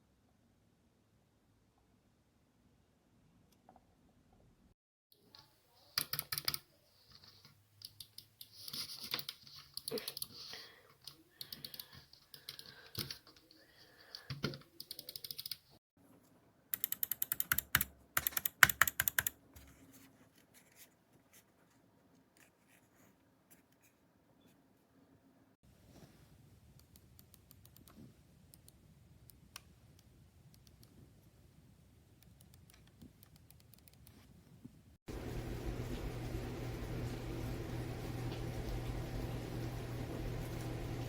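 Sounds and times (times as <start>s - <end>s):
computer keys clicking: 6.0s - 6.6s, 11.0s - 15.7s, 16.7s - 19.4s.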